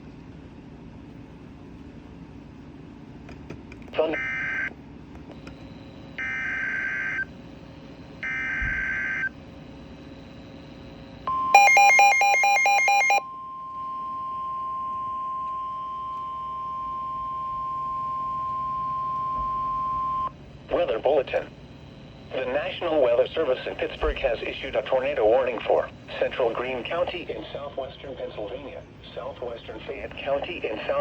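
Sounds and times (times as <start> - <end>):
steady warning alarm tone: 4.0 - 4.7, 5.3 - 28.0
loud pulsing electronic beep: 11.3 - 20.3.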